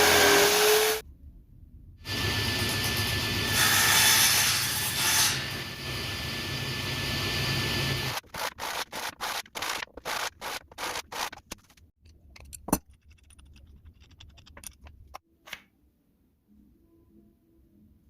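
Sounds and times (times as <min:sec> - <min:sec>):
sandpaper rubbing: 0:08.1 - 0:11.8.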